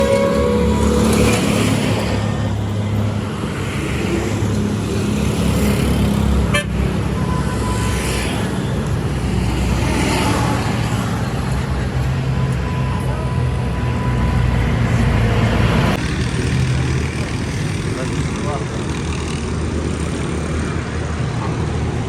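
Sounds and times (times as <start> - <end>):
car horns tooting: 0.0 - 1.6
heavy road traffic: 0.0 - 22.0.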